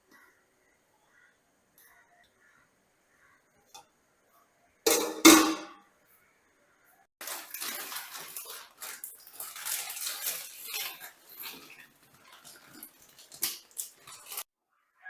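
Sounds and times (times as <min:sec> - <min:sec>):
kitchenware scraping and rattling: 0:04.9 - 0:05.8, 0:07.2 - 0:14.5
pot clanking: 0:04.9 - 0:05.8, 0:07.2 - 0:14.5.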